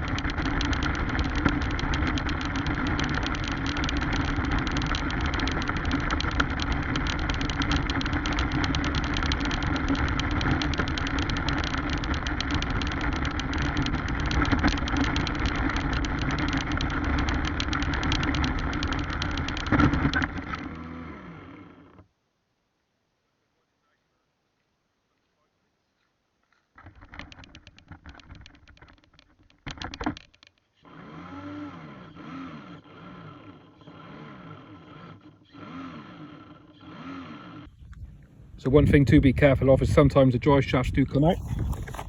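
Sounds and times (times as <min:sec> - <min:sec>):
fine rattling on stones: 0:00.0 - 0:20.7, 0:26.4 - 0:30.7, 0:41.2 - 0:42.0
rc car motor running: 0:00.0 - 0:22.0, 0:26.8 - 0:39.0, 0:41.2 - 0:42.0.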